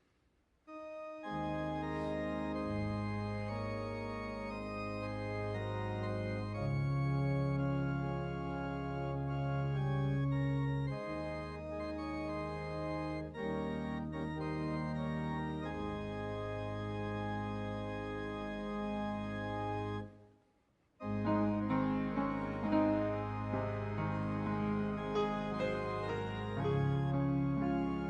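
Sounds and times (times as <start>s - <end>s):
organ playing sustained chords: 0.7s - 20.1s, 21.0s - 28.0s.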